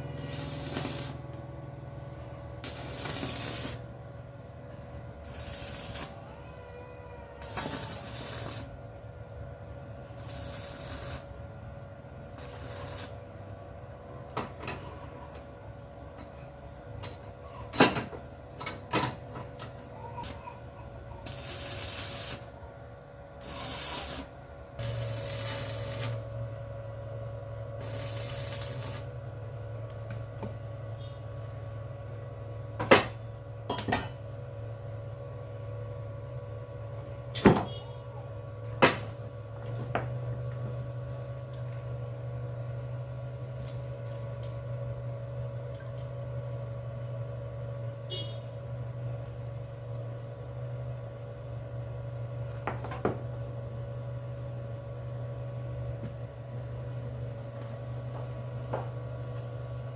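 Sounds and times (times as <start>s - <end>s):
motor humming: 0.0s - 15.4s, 19.0s - 31.2s.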